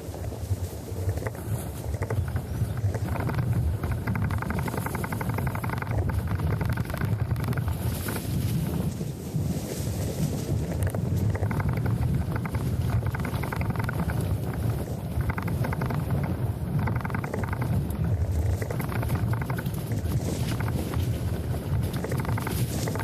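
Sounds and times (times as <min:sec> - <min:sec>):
rough rushing noise: 0:00.0 - 0:23.0
wind buffeting microphone: 0:00.0 - 0:23.0.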